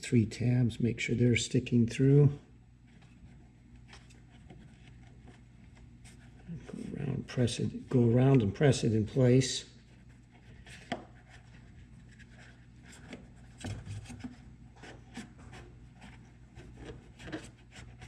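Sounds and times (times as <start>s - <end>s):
rubber rubbing on plastic: 2.8s - 8.6s, 9.7s - 18.0s.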